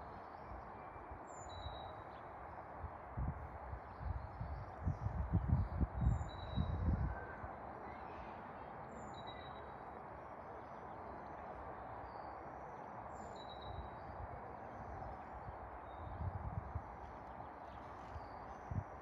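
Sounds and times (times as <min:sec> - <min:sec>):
wind: 0:00.0 - 0:19.0
wind buffeting microphone: 0:02.8 - 0:07.4, 0:13.8 - 0:19.0.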